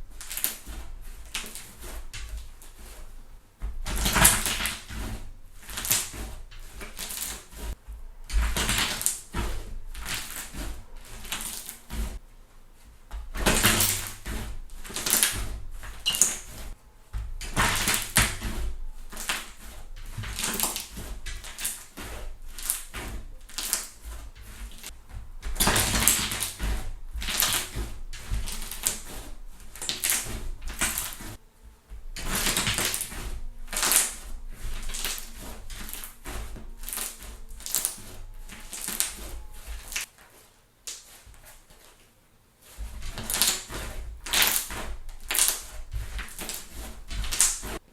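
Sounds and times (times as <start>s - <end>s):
hands squishing slime: 0.0s - 42.0s, 42.6s - 47.9s
slime crackling and popping: 32.1s - 40.1s.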